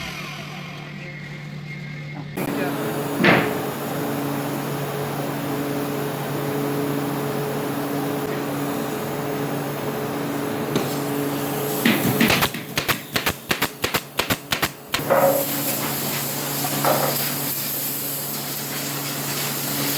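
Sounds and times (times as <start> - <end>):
power tool motor hum: 0.0 - 1.1.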